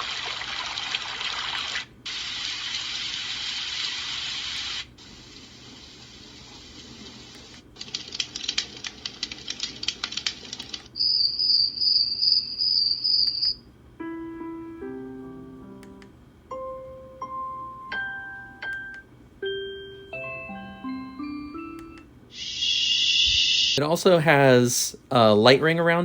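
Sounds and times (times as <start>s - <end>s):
cricket chirping: 11.0s - 13.7s, 22.4s - 23.8s
piano-like notes: 14.0s - 22.2s.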